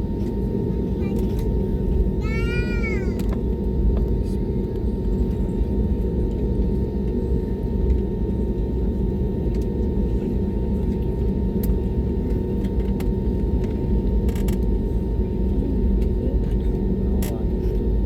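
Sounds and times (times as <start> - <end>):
jet engines rumbling: 0.0 - 18.0.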